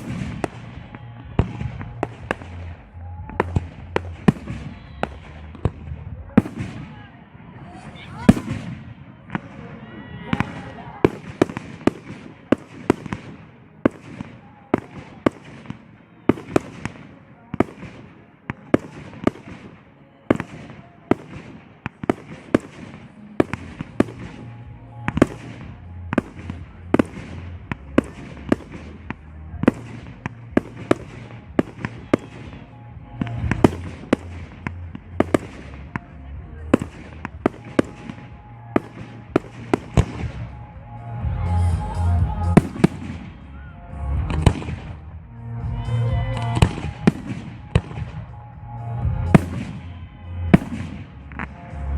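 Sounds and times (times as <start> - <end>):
music with low bass line: 0.0 - 6.6, 23.4 - 51.9
fireworks bursting with sharp bangs: 0.0 - 51.9.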